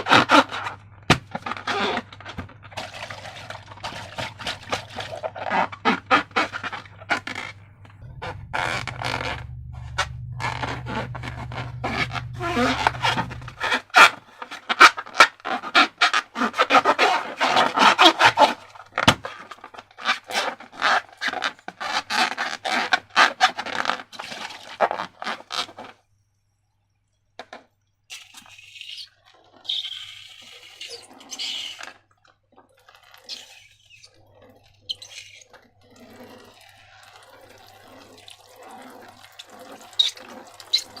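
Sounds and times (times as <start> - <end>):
slime squelching by hand: 2.7 - 16.4, 32.6 - 41.0.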